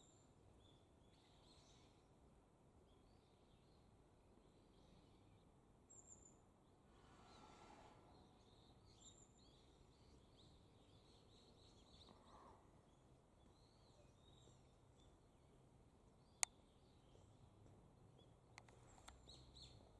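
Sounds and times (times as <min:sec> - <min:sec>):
small birds chirping: 0:00.0 - 0:02.1, 0:08.1 - 0:19.9.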